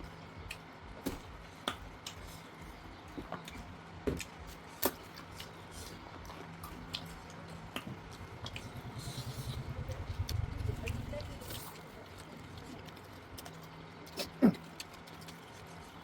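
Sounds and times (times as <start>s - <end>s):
chewing and wet mouth noises: 0.0s - 16.0s
low rhythmic pulsing: 0.0s - 16.0s
sharp mouth clicks and smacks: 0.1s - 0.7s, 1.6s - 2.6s, 3.3s - 11.0s, 12.8s - 16.0s.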